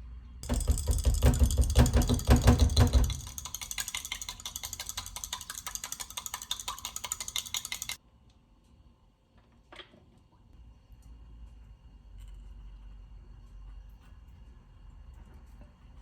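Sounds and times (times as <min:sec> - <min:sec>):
rapid mechanical clicking: 0:00.4 - 0:08.0.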